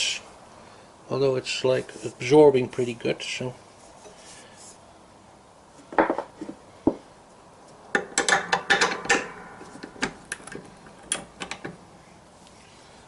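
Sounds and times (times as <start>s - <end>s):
wood and tools knocking and rattling: 5.8s - 7.1s, 7.9s - 11.8s.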